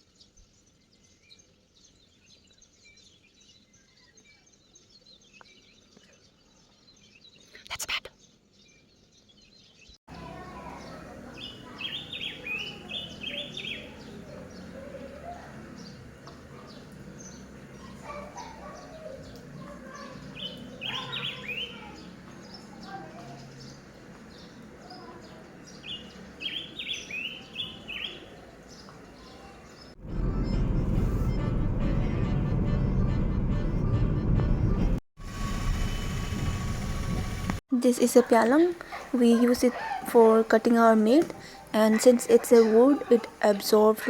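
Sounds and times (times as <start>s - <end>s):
songbirds chirping: 0.0s - 30.8s, 37.5s - 44.0s
low background murmur: 10.1s - 26.4s.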